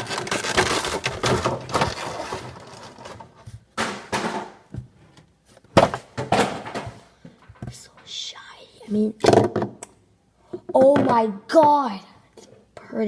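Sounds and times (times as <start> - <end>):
cardboard and plastic packaging rustling: 0.0 - 7.2.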